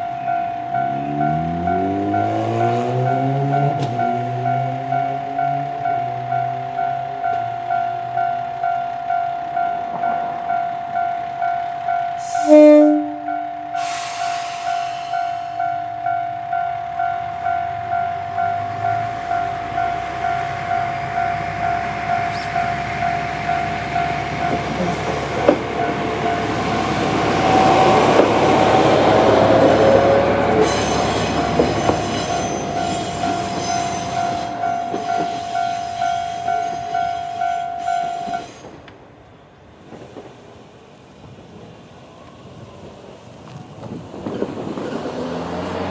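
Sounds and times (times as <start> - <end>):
level crossing warning bell: 0.0 - 38.5
diesel railcar passing: 0.0 - 45.9
wheels clattering over rail joints: 23.6 - 38.9, 43.1 - 45.9.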